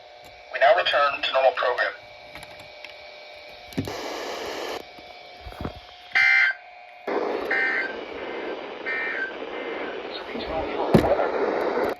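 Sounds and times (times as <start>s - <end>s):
radio hiss: 0.3s - 2.5s, 3.7s - 11.9s
buzzy digital tone bursts: 7.1s - 11.5s.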